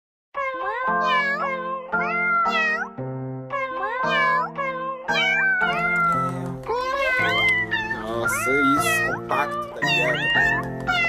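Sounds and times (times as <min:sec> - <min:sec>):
cat meow melody: 0:00.4 - 0:11.0
sustained keyboard chords: 0:04.2 - 0:11.0.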